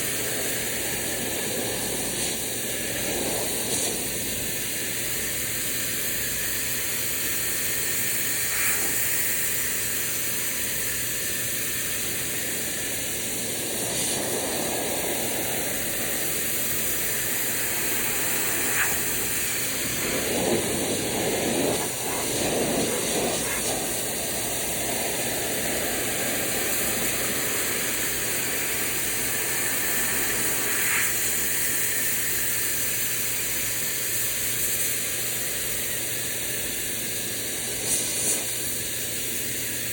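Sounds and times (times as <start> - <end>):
steady low hum: 0.0 - 31.8
pressure washer spray hissing: 0.0 - 39.9.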